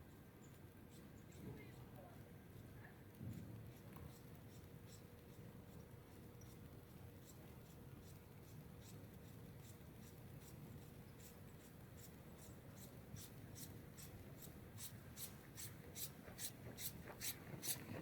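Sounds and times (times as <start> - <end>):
footsteps crunching in snow: 16.3 - 18.0.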